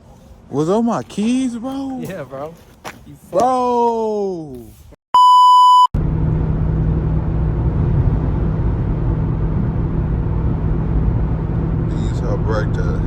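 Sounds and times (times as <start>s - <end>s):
road noise: 0.0s - 4.8s, 6.0s - 13.0s
car engine rumble: 6.0s - 13.0s.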